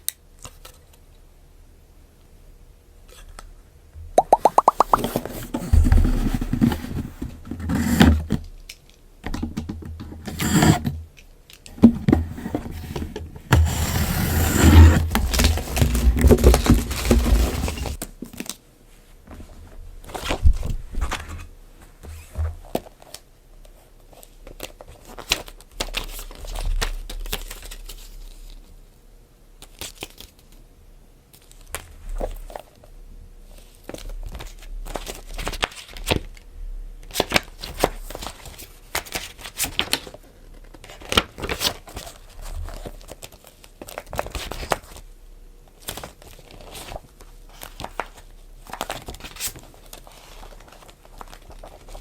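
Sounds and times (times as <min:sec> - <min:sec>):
items scraping: 0:10.2 - 0:11.0, 0:12.0 - 0:18.0
plastic packaging crinkling and tearing: 0:15.0 - 0:18.6.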